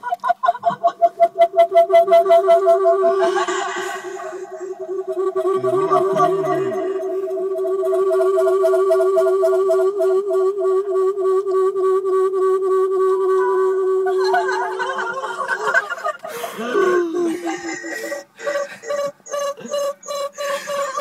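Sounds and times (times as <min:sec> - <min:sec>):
wavering laughter-like sounds: 0:00.0 - 0:01.3, 0:02.7 - 0:07.5, 0:14.0 - 0:21.0
warbling electronic tone: 0:00.6 - 0:16.9.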